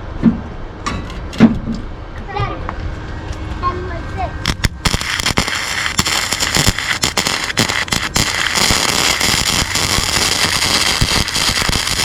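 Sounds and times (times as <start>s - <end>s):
welding arc crackling: 4.4s - 12.0s.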